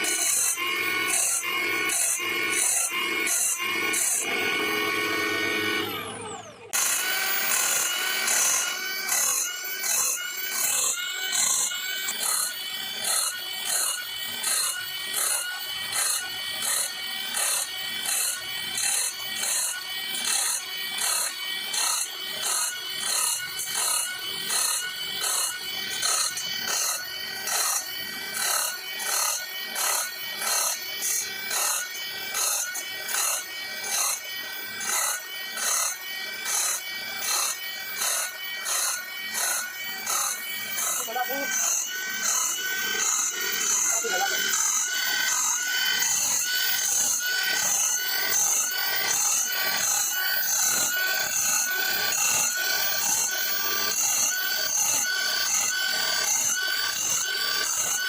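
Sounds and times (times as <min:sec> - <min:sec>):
electric drill whine: 0:00.0 - 0:58.0
grinding stone on saw blade: 0:00.0 - 0:58.0.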